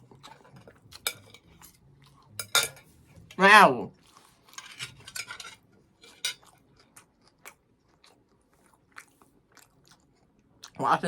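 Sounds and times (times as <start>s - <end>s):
person chewing: 6.1s - 10.8s.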